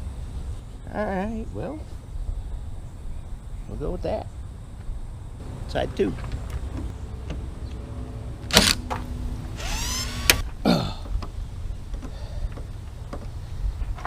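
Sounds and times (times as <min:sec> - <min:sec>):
impact driver motor whine: 0:09.5 - 0:10.4
impact driver clicks: 0:09.6 - 0:10.4.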